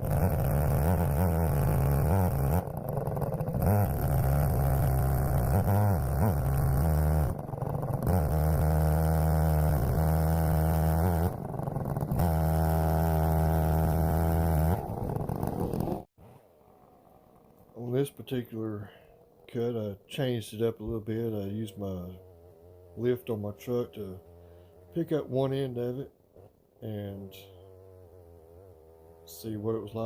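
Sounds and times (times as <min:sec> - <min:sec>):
chainsaw cutting log: 0:00.0 - 0:16.1.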